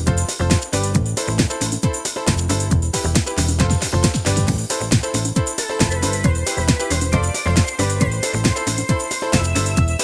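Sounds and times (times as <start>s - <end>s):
electronic music with bass beat: 0.0s - 10.0s.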